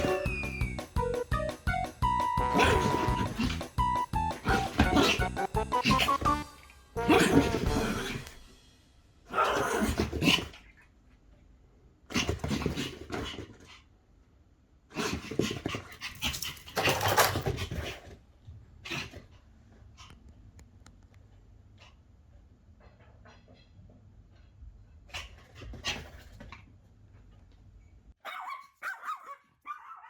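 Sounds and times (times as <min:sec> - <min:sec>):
dog growling in play: 0:02.5 - 0:03.7.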